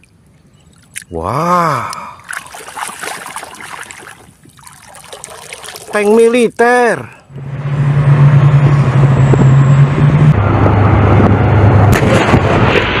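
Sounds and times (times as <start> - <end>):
tank engine droning: 7.2 - 13.0.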